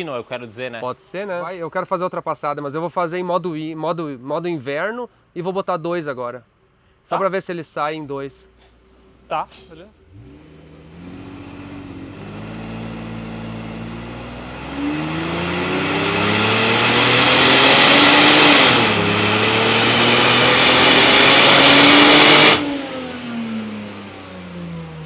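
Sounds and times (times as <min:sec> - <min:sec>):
car engine revving at full throttle: 0:10.0 - 0:25.0.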